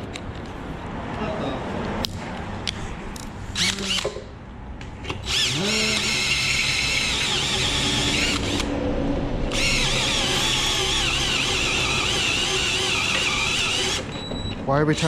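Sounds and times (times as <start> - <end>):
electric drill motor: 5.2 - 8.7, 9.5 - 14.1.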